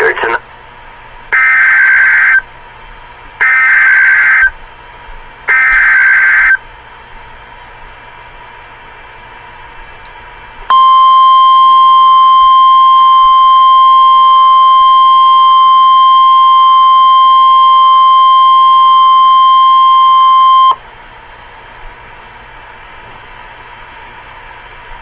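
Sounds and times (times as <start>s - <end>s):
faint static: 0.0s - 25.0s
long high alert tone: 1.4s - 2.4s, 3.4s - 4.5s, 5.5s - 6.6s, 10.7s - 20.8s.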